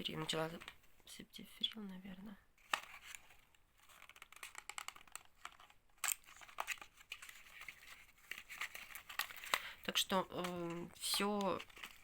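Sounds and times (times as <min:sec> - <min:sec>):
blister pack crinkling: 0:02.6 - 0:12.0.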